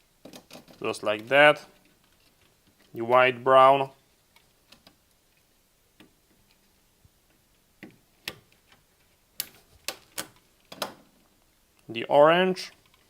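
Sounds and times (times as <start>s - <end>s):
wire clicks and taps: 0.2s - 3.2s, 6.0s - 6.6s, 7.3s - 8.8s, 9.4s - 11.9s.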